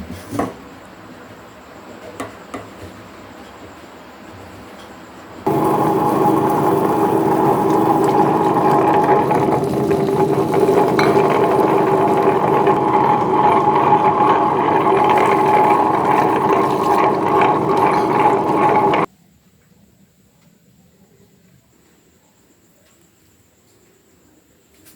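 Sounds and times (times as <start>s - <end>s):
small electric motor whining: 5.5s - 19.1s.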